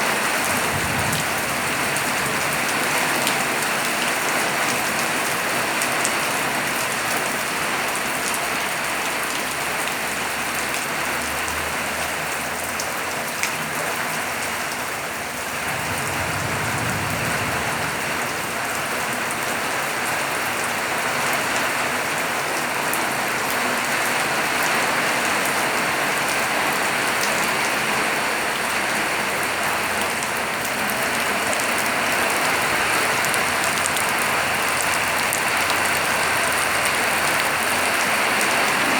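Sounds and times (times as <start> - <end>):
steady rain: 0.0 - 38.9.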